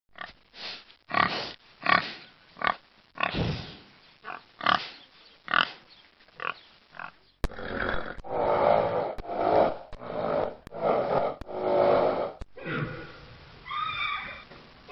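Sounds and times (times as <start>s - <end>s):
hog grunting: 7.0s - 13.2s.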